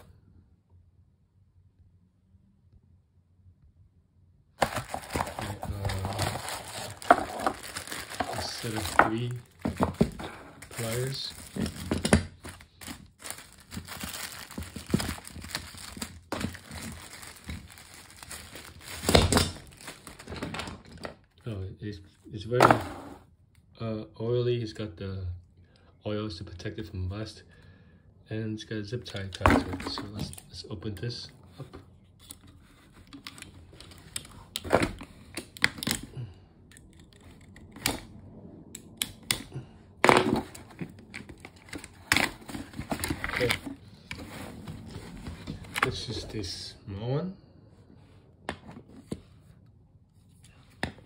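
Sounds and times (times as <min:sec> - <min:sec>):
packaging tearing: 0:04.6 - 0:20.4
packaging crinkling and rustling: 0:04.6 - 0:21.2, 0:32.2 - 0:36.1, 0:40.0 - 0:46.2.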